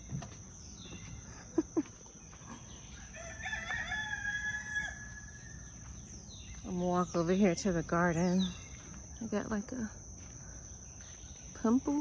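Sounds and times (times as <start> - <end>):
rooster crowing: 2.9 - 5.7.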